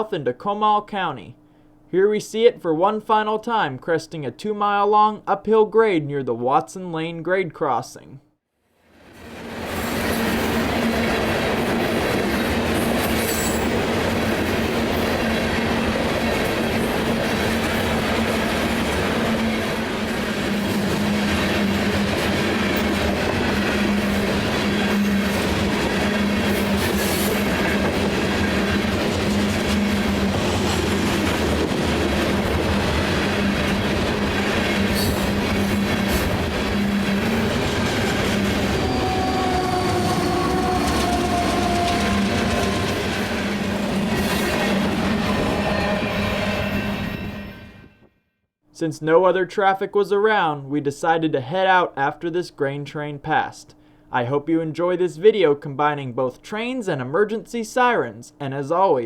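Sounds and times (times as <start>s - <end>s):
train wheels rumbling on rails: 9.2s - 47.1s.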